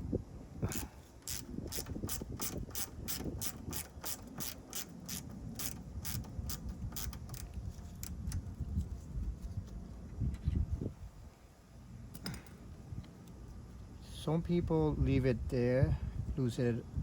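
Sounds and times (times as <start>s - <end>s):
hand ratchet clicking: 0.7s - 8.2s.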